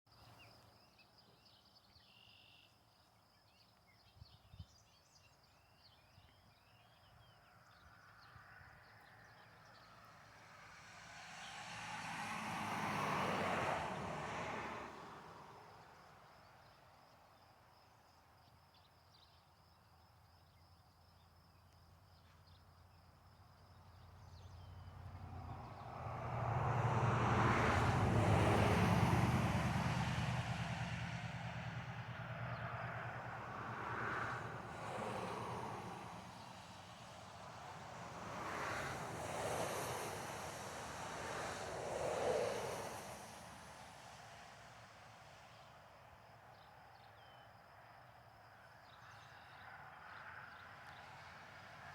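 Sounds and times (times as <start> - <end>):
motor vehicles passing by: 9.3 - 15.8, 24.0 - 45.4.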